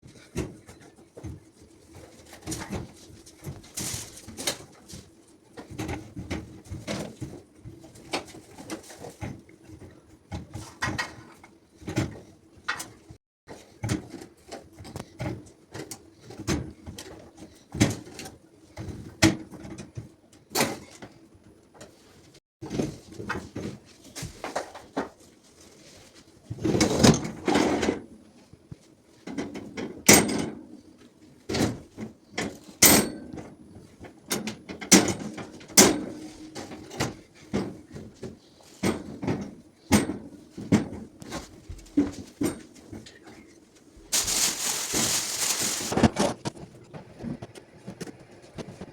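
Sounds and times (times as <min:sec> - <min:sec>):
rattling scrape: 0:44.1 - 0:46.1.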